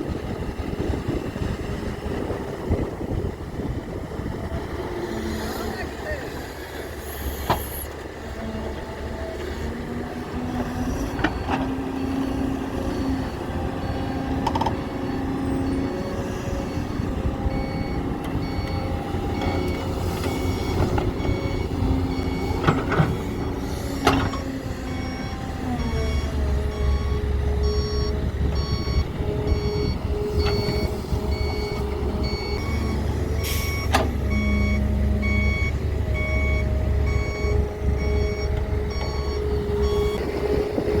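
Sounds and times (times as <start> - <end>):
heavy diesel engines running: 0.0 - 41.0
reversing alarm beeping: 13.0 - 40.5.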